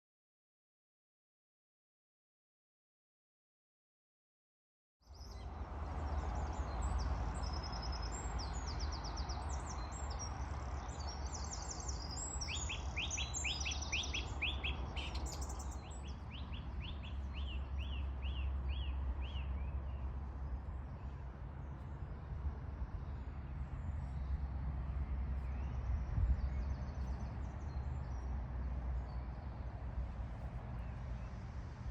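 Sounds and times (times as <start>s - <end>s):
birds chirping and singing: 6.3s - 19.5s
steady low rumble: 15.9s - 31.9s.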